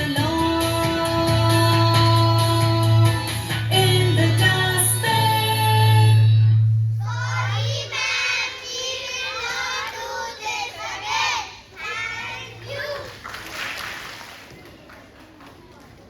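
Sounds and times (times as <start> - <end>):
children singing: 7.0 - 13.1.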